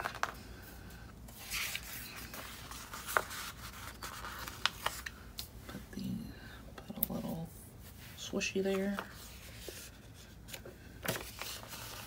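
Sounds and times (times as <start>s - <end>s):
paper rubbing and rustling: 1.4s - 5.1s, 7.8s - 12.0s.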